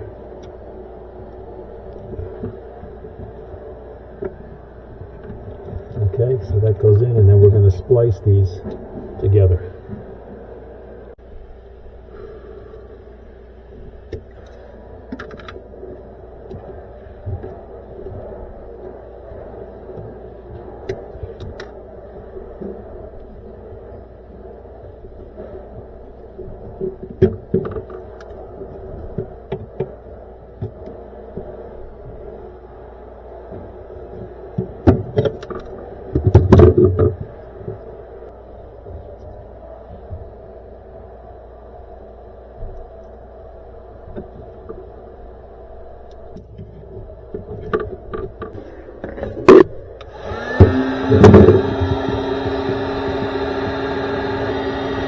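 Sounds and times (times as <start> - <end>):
steady low hum: 0.0 - 55.0
small motor running with hiss: 50.1 - 55.0.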